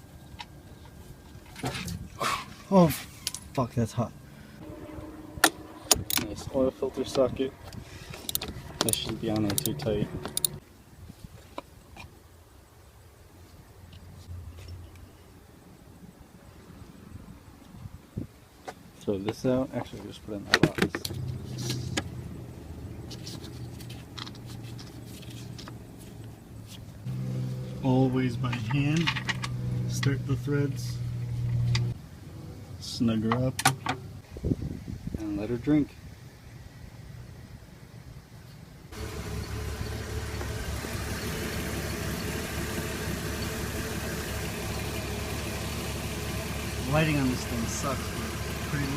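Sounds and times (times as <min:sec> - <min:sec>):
steady low hum: 0:03.7 - 0:10.7
car engine idling: 0:04.2 - 0:10.6, 0:26.6 - 0:30.3, 0:38.9 - 0:48.9
parts clicking and rustling by hand: 0:07.7 - 0:10.6, 0:23.1 - 0:27.0.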